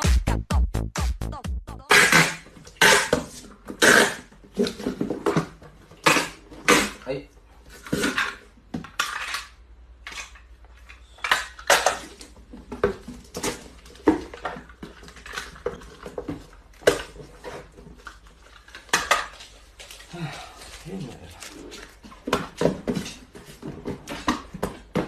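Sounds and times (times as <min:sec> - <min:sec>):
hard objects clattering: 0:07.7 - 0:20.8.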